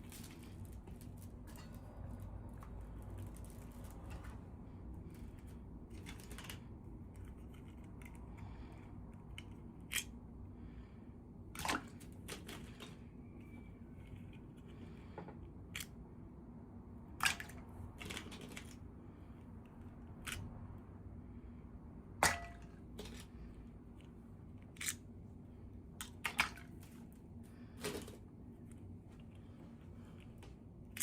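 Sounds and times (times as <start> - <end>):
low steady hum: 0.0 - 31.0
plastic toy parts clicking: 9.3 - 10.2.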